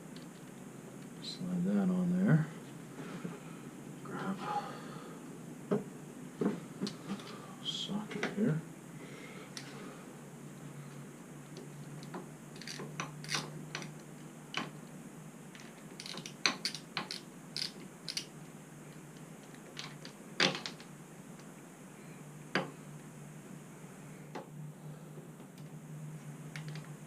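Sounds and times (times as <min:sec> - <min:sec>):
small metal parts handled: 0:12.6 - 0:13.9
socket ratchet clicking: 0:16.0 - 0:18.3.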